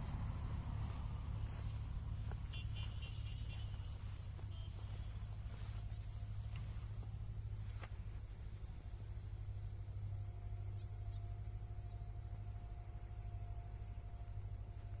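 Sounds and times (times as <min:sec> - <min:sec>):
low rumble: 0:00.0 - 0:08.6
insects chirring: 0:00.0 - 0:15.0.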